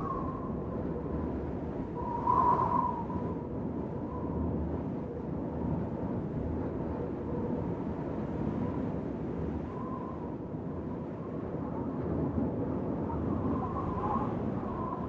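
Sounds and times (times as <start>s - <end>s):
faint thin whistle: 0.0s - 0.7s, 2.0s - 3.4s, 9.6s - 10.3s, 13.2s - 15.0s
wind blowing across microphone: 0.0s - 15.0s.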